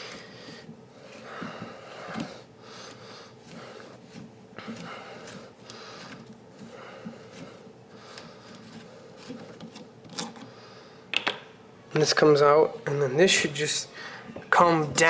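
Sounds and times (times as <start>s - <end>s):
plastic threads rasping: 0.0s - 10.6s.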